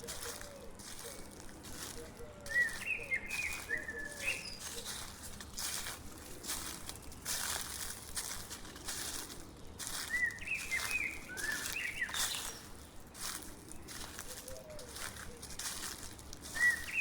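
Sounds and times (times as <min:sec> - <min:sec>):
footsteps crunching dry leaves: 0:00.0 - 0:17.0
small bird chirping: 0:02.0 - 0:05.9, 0:09.8 - 0:17.0.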